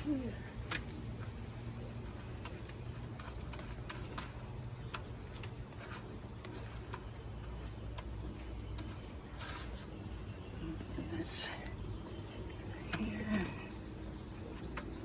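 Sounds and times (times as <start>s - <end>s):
faint clicks and taps: 0.6s - 9.8s, 14.4s - 15.0s.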